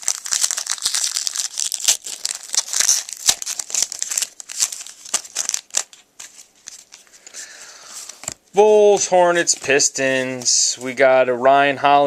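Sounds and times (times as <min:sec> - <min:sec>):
wrapper crinkling: 0:00.0 - 0:08.4.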